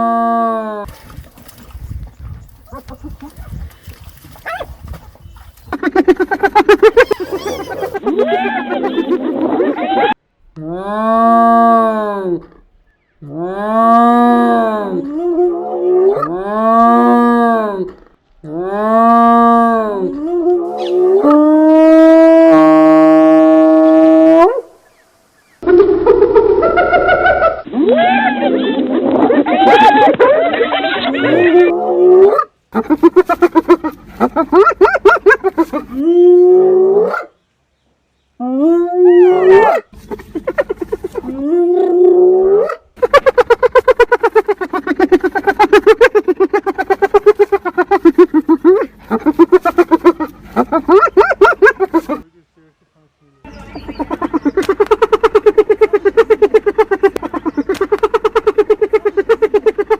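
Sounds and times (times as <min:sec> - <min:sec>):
long animal calls: 0:05.6 - 0:24.8, 0:25.6 - 0:37.4, 0:38.4 - 0:59.9
hyena howls: 0:38.4 - 0:39.8.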